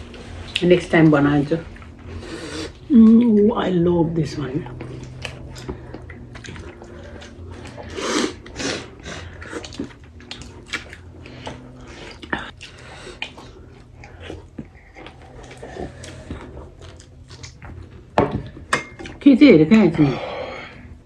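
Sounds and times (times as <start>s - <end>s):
low steady hum: 0.0s - 21.0s
biting and chewing food: 4.3s - 19.3s.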